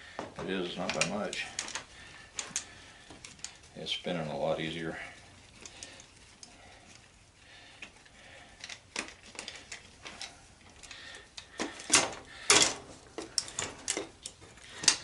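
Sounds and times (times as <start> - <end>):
metal clanks: 11.5 - 15.0.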